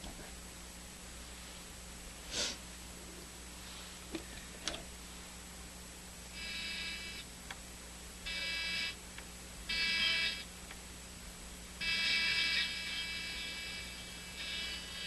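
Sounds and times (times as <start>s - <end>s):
low steady hum: 0.0s - 15.0s
buzzy radio tone: 6.4s - 7.3s, 8.3s - 9.0s, 9.7s - 10.5s, 11.8s - 15.0s.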